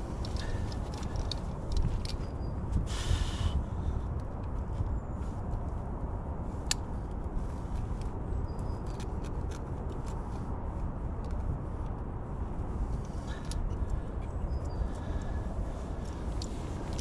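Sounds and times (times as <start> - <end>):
low outdoor rumble: 0.0 - 17.0
light clicks and taps: 0.2 - 2.4.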